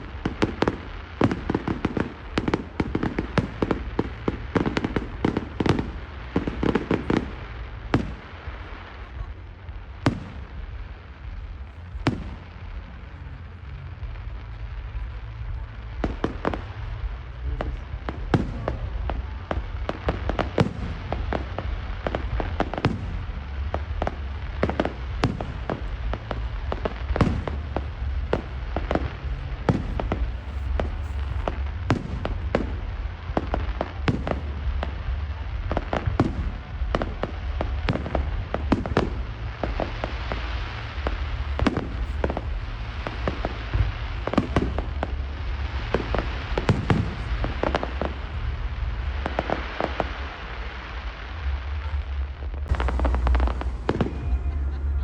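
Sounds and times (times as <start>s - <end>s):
fireworks bangs: 0.0s - 55.0s
fireworks crackling: 0.0s - 55.0s.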